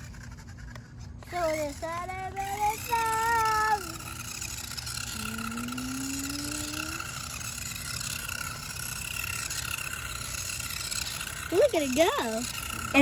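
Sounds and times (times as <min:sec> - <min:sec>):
electric motors whining: 0:00.0 - 0:13.0.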